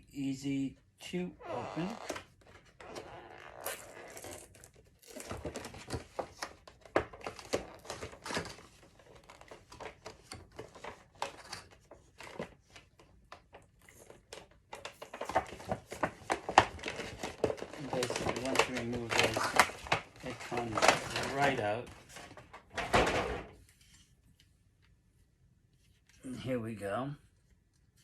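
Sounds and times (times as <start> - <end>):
tape being peeled: 1.5 - 8.4
packaging crinkling and tearing: 2.9 - 12.5, 14.0 - 21.7.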